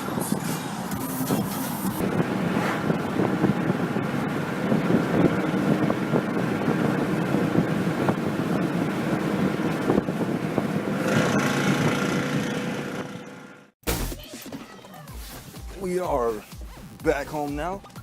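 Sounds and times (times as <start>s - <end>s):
wind noise: 0.0s - 12.3s
road noise inside car: 0.0s - 13.8s
car engine: 0.0s - 14.2s.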